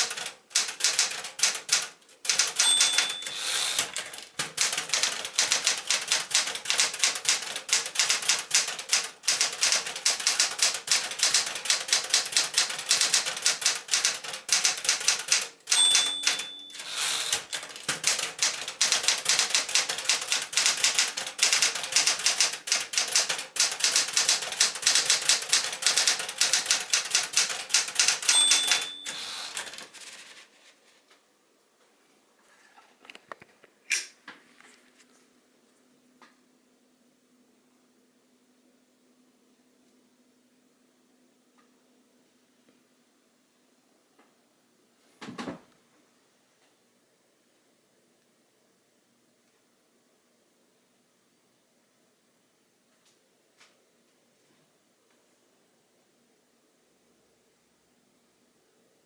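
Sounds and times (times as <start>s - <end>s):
typewriter margin bell ring: 0.0s - 7.2s, 10.9s - 20.0s, 23.2s - 30.2s
manual typewriter typing: 0.0s - 30.4s.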